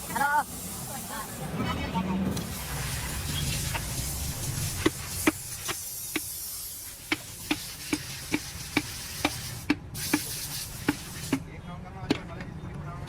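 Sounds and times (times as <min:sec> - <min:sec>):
steady hiss: 0:02.4 - 0:11.4.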